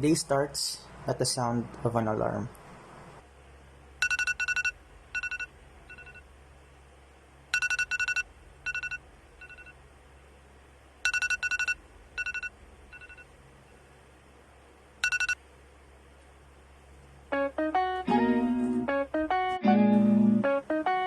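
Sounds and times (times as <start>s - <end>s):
electronic alarm beeping: 4.0s - 6.2s, 7.5s - 9.7s, 11.0s - 13.3s, 15.0s - 15.4s.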